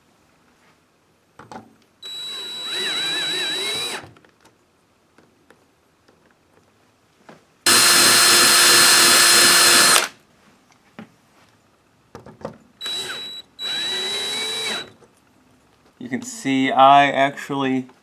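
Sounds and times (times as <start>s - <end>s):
power drill on metal: 2.0s - 4.1s, 7.7s - 10.1s, 12.8s - 15.0s.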